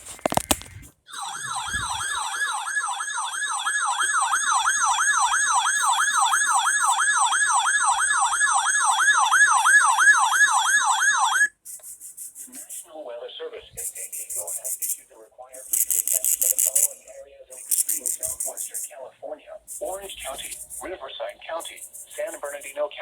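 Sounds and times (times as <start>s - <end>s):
electronic siren alert tone: 1.1s - 11.5s, 19.7s - 20.9s.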